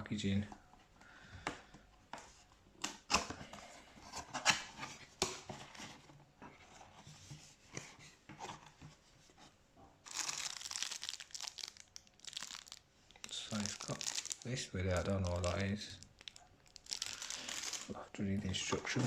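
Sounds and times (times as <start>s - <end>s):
packaging crinkling: 10.0s - 18.0s.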